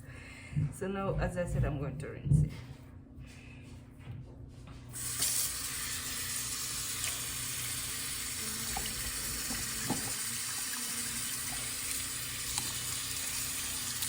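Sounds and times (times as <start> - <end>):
water running: 5.0 - 14.0.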